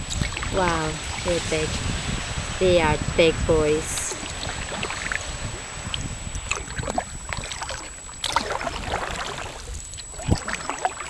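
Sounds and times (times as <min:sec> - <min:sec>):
paddle strokes splashing: 0:03.8 - 0:11.0
water trickling against hull: 0:03.8 - 0:11.0.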